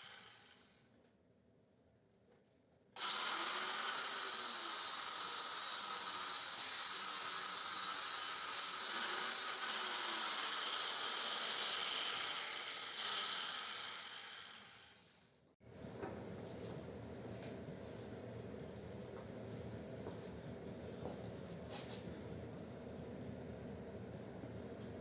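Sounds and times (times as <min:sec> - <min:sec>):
power tool cutting steel: 0:03.0 - 0:15.2.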